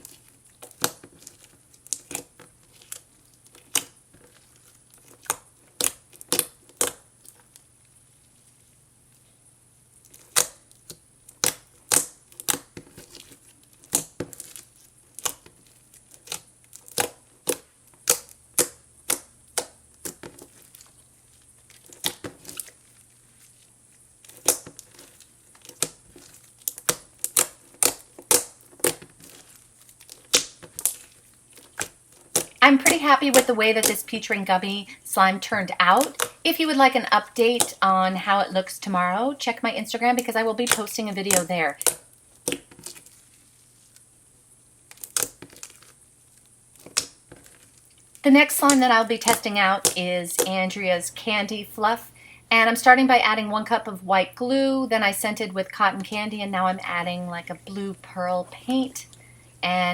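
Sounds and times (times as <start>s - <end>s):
slime clicking and popping: 0.6s - 3.0s, 3.6s - 4.0s, 5.0s - 7.1s, 10.1s - 12.8s, 13.8s - 15.6s, 16.2s - 20.9s, 24.2s - 34.1s, 36.0s - 36.4s, 40.7s - 43.0s, 44.9s - 45.9s, 46.8s - 47.5s.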